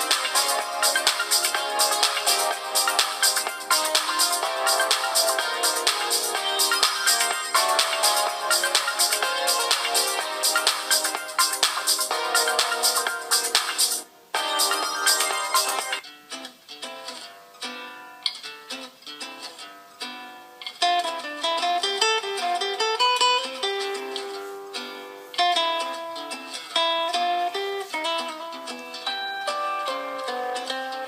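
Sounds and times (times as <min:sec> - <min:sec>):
ringtone melody: 0:00.0 - 0:16.0.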